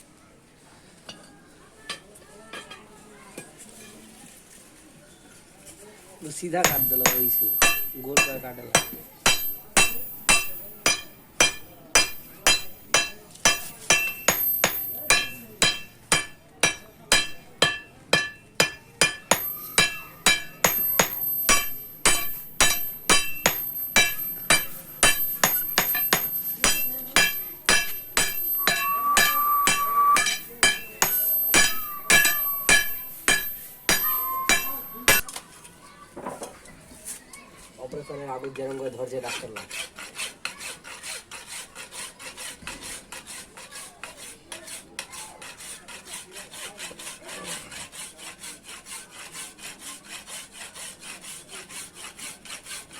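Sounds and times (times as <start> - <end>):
hammer striking steel on anvil: 6.6 - 35.2.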